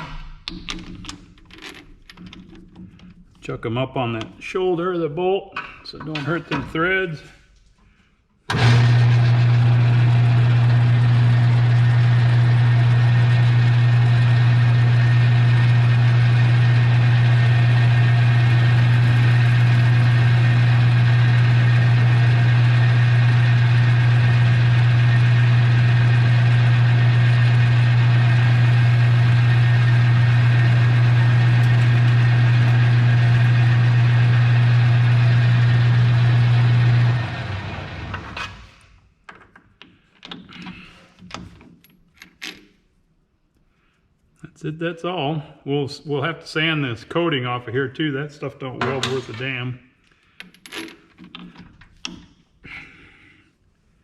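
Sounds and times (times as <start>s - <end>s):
metal lathe motor hum: 8.5s - 38.4s.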